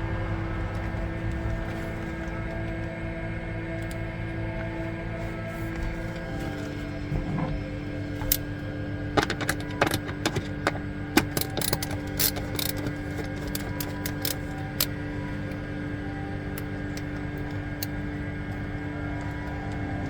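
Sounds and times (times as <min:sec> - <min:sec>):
steady hum: 0:00.0 - 0:20.0
tools and hardware rattling: 0:05.5 - 0:15.6.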